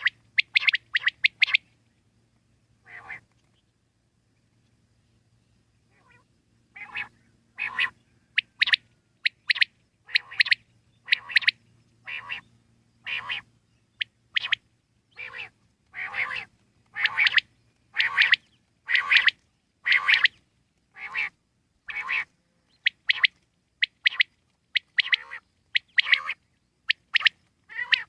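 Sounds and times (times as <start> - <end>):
quail calling: 0.0 - 1.7, 2.8 - 3.3, 5.9 - 28.0.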